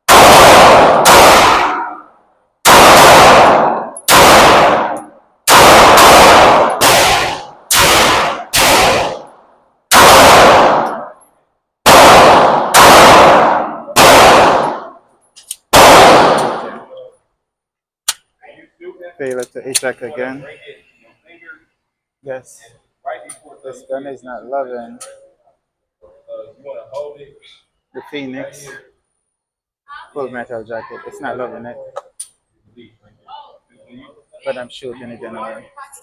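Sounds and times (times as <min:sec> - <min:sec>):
pistol shots echoing indoors: 0:00.1 - 0:15.0, 0:15.7 - 0:17.0.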